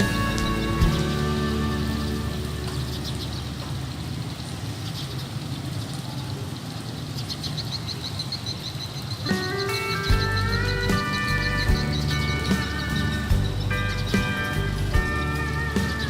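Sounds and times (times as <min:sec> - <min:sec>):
low rumble and hiss: 0:00.0 - 0:08.4
fast high chirps: 0:06.6 - 0:16.0.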